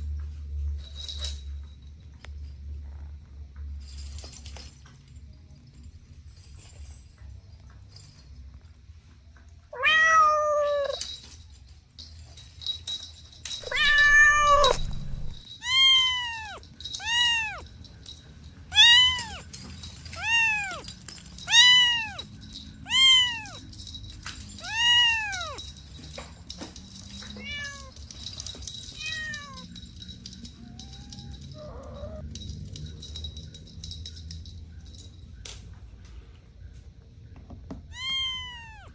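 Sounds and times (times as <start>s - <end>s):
kittens meowing: 9.8s - 11.0s, 13.6s - 17.7s, 18.7s - 19.5s, 20.1s - 22.3s, 22.9s - 23.6s, 24.6s - 25.6s, 27.4s - 28.0s, 29.0s - 29.7s, 30.5s - 32.2s, 37.9s - 38.9s.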